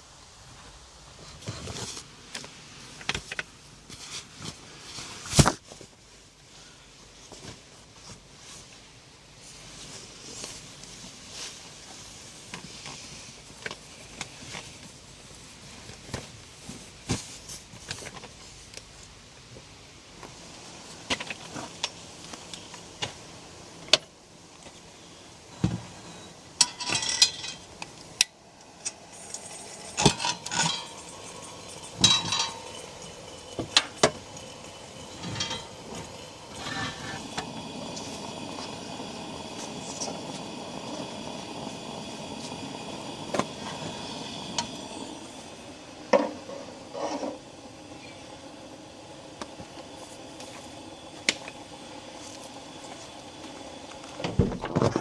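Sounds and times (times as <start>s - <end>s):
cookware clinks and knocks: 29.9s - 33.1s.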